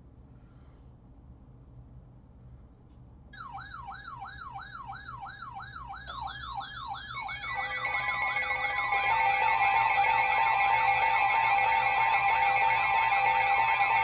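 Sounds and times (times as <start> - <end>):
electronic siren yelping: 3.4 - 14.0
steady tones: 7.0 - 14.0.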